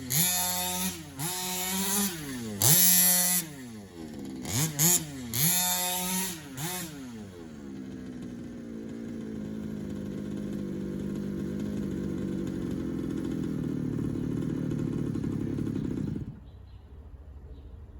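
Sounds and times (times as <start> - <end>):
small two-stroke engine idling: 0.0 - 17.1.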